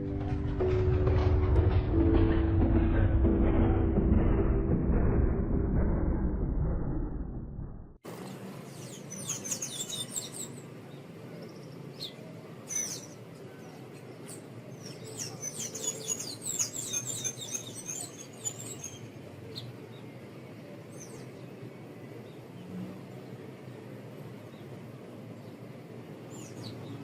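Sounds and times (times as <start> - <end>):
steady low hum: 0.0 - 9.0
songbirds chirping and twittering: 8.1 - 27.0.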